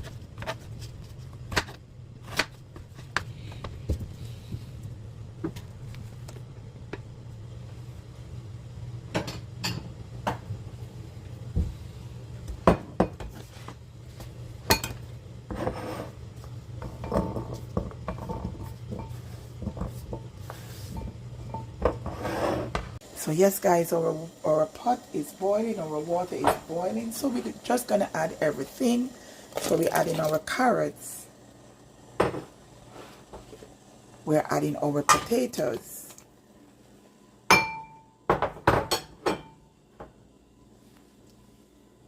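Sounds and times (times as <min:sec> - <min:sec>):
steady low hum: 0:00.0 - 0:42.0
pots and utensils clinking: 0:09.1 - 0:10.4, 0:14.6 - 0:16.2, 0:16.8 - 0:22.8, 0:37.5 - 0:39.6.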